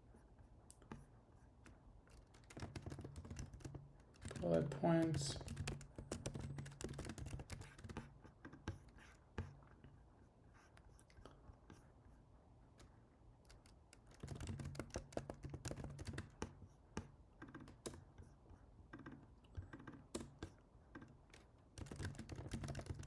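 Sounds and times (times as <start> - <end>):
typing on a keyboard: 1.0 - 9.5, 13.5 - 18.3, 18.9 - 23.0.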